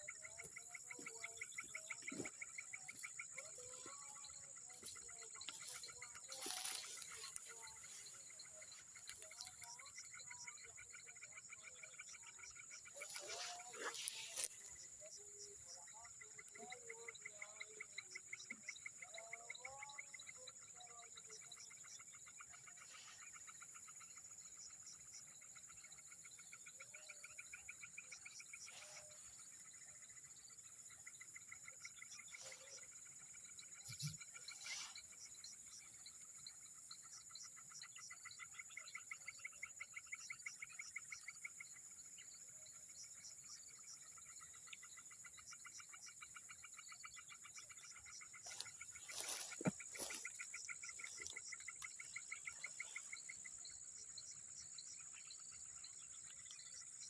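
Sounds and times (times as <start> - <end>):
high-pitched insect drone: 0.0 - 11.1, 11.9 - 25.2, 32.1 - 38.4, 42.3 - 57.0
fast regular chirping: 0.1 - 10.4, 44.4 - 57.0
rustle: 13.1 - 14.6.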